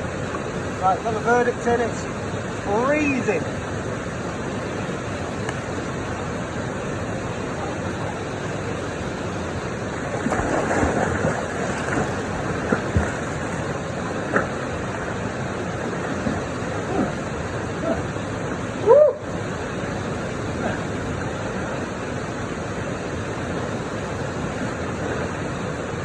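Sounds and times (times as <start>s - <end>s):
river water rushing over rocks: 0.0s - 26.0s
irregular water splashing: 7.3s - 23.8s.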